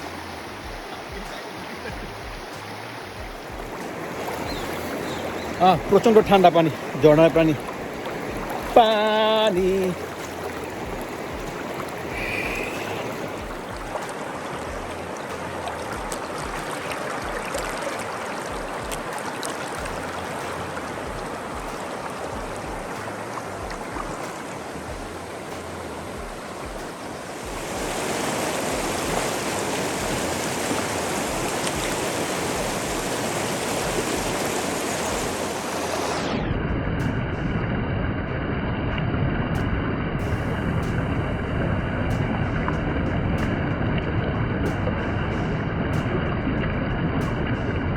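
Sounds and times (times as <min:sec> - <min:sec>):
river rushing over rocks: 0:00.0 - 0:36.4
low rumble: 0:36.1 - 0:47.9.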